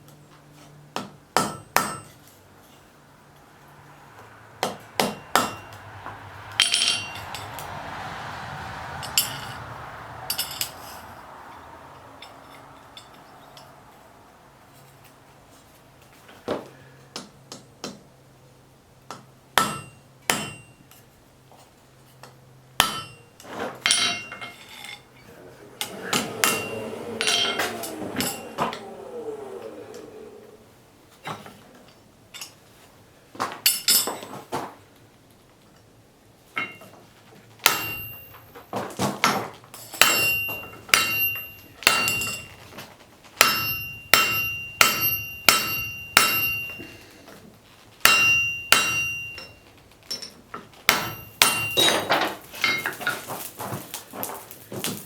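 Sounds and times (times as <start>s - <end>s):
hammer striking hot steel on anvil: 1.0s - 2.1s, 19.6s - 20.7s, 37.6s - 38.2s, 40.0s - 42.6s, 43.4s - 47.0s, 48.0s - 49.6s, 50.9s - 52.9s
metal scraping: 25.0s - 30.8s.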